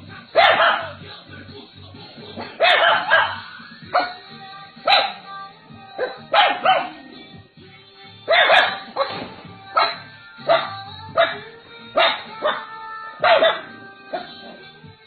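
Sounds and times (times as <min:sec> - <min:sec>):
background music: 0:00.0 - 0:15.0
dog barking: 0:00.4 - 0:01.0, 0:02.4 - 0:04.2, 0:04.8 - 0:05.2, 0:06.0 - 0:07.1, 0:08.3 - 0:14.6.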